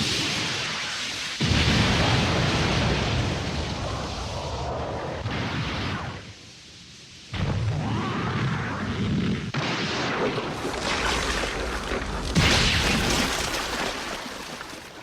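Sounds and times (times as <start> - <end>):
rumbling explosion-like crash: 1.4 - 6.2, 7.3 - 14.2.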